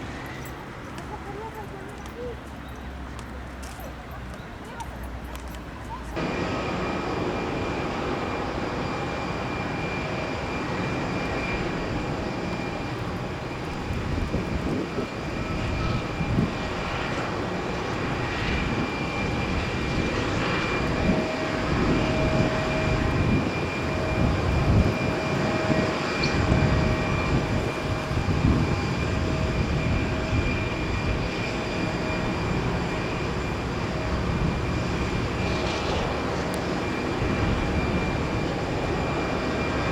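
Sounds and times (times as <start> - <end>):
light aircraft engine droning: 0.0 - 39.9.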